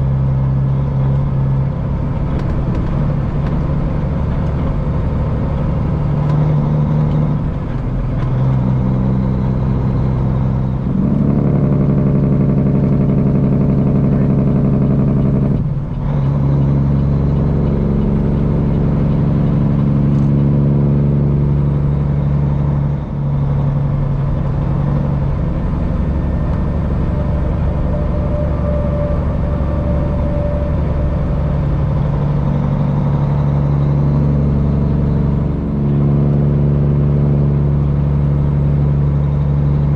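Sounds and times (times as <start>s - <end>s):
diesel truck engine running: 0.0s - 39.9s.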